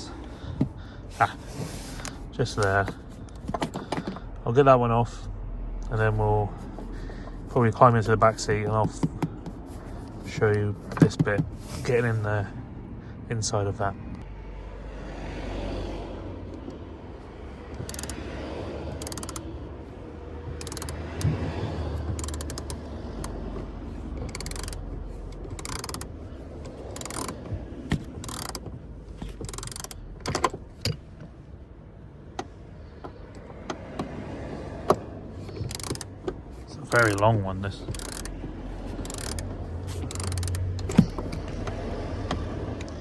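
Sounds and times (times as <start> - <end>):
rustling handling noise: 0.2 - 4.2, 6.0 - 12.4
socket ratchet clicking: 17.7 - 19.6, 20.5 - 31.0, 35.4 - 43.0.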